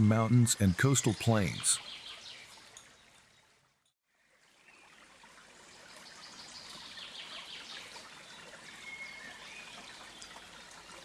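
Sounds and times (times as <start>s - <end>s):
faint outdoor ambience: 0.0s - 2.8s.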